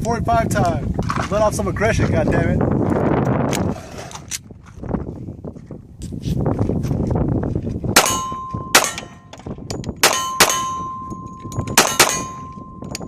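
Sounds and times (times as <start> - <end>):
pistol shots: 8.0 - 9.3, 10.0 - 11.0, 11.6 - 12.5
steel target ringing: 8.0 - 9.3, 10.0 - 13.0.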